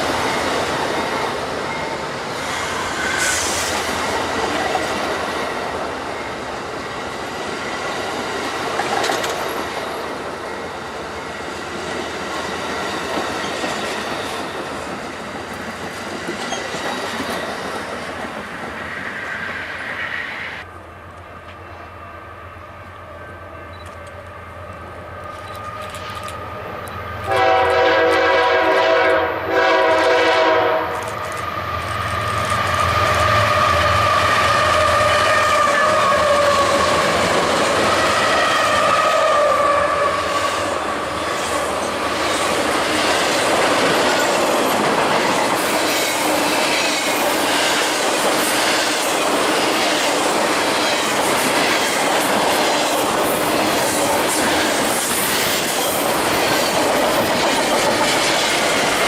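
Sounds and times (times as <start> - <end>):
train wheels on rails: 0.0 - 59.0
train air horn blasts: 27.2 - 31.1, 38.2 - 40.8.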